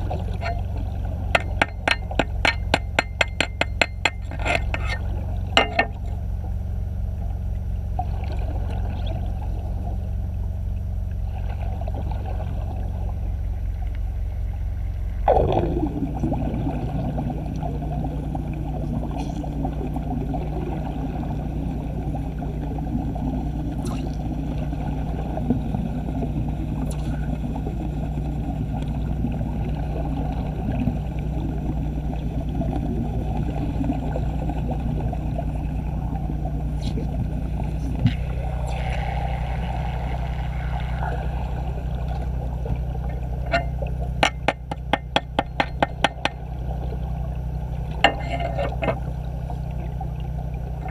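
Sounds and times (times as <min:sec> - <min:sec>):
rough churning noise: 0:00.0 - 0:06.3, 0:15.2 - 0:46.8, 0:47.7 - 0:49.7
low machine hum: 0:00.0 - 0:50.9.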